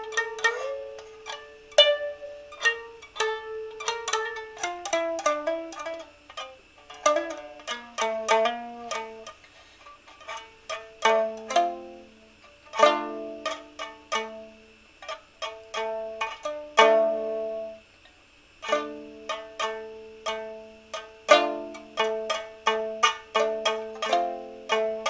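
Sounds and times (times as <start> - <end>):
plucked string instrument: 0.0 - 9.4, 10.0 - 17.8, 18.6 - 25.0.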